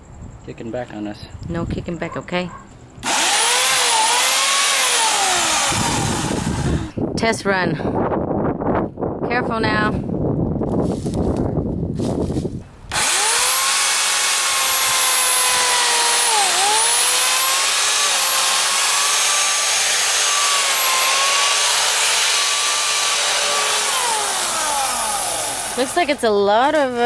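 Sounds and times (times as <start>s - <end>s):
electric chainsaw motor whining: 3.0s - 7.0s, 12.9s - 26.2s.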